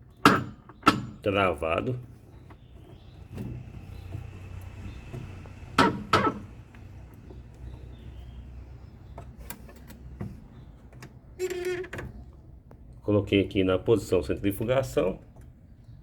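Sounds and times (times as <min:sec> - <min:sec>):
washing machine motor hum: 0:00.0 - 0:11.4
sharp knocks: 0:05.8 - 0:06.5.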